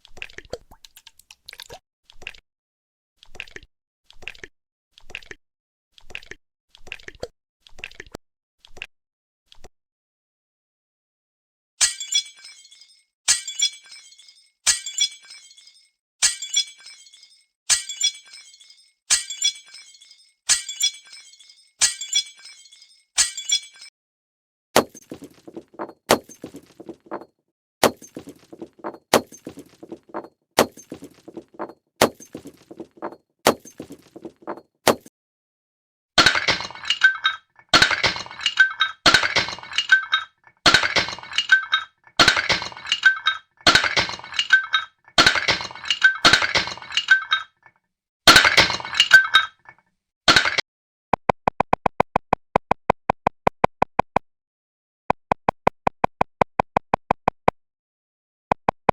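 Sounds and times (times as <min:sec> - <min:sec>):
crunching clinking bursts: 0:11.8 - 0:23.9, 0:36.2 - 0:47.7, 0:48.3 - 0:50.6.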